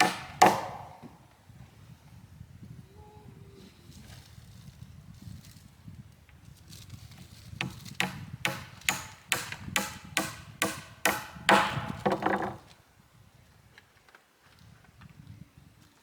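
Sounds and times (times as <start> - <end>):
sharp strikes on wood: 0.0 - 1.2, 7.6 - 12.6.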